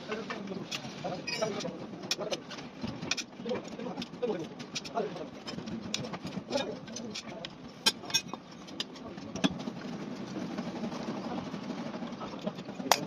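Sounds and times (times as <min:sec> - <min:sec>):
workshop background noise: 0:00.0 - 0:13.0
tools clinking on metal: 0:01.2 - 0:02.4, 0:04.6 - 0:09.6.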